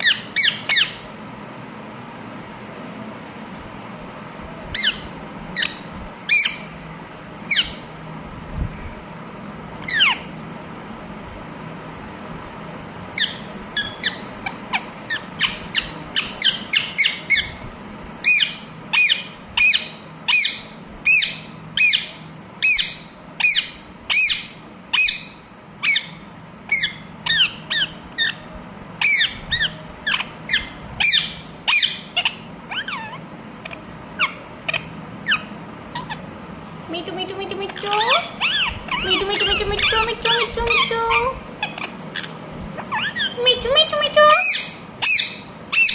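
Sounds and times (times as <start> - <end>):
parrot squawking: 0.0 - 1.0, 4.8 - 6.8, 7.5 - 7.9, 9.8 - 10.3, 13.2 - 17.6, 18.2 - 36.2, 37.5 - 45.9.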